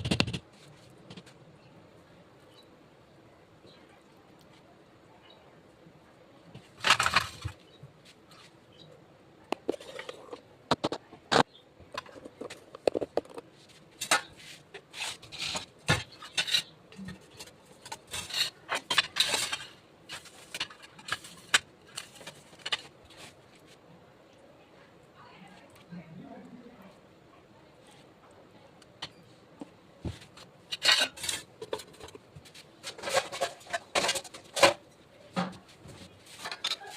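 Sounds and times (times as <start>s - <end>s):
utensils and dishes clinking: 14.0s - 22.9s, 30.7s - 32.2s, 32.8s - 34.8s.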